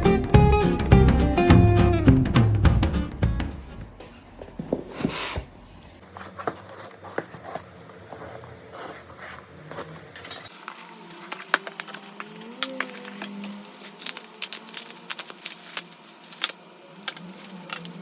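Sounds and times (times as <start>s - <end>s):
packaging rustle: 6.0s - 18.0s
small items clicking and tapping: 9.7s - 18.0s.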